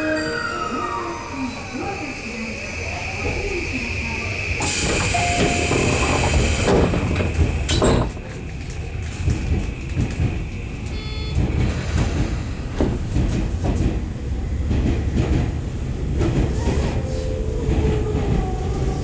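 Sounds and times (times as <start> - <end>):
high ringing tone: 0.0 - 2.7, 5.1 - 6.2
train rumble: 0.0 - 19.0.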